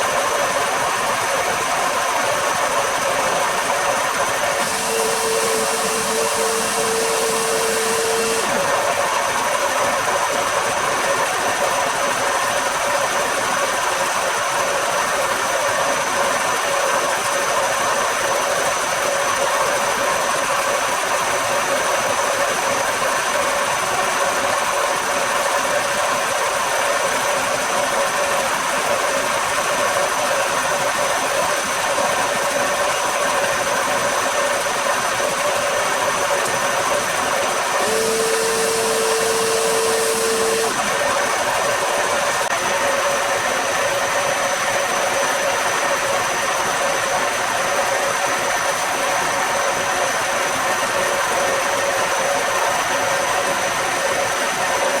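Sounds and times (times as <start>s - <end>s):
machine tool motor whirring: 4.2s - 9.2s, 36.4s - 42.5s
steady hum tones: 4.5s - 8.7s, 37.8s - 41.0s.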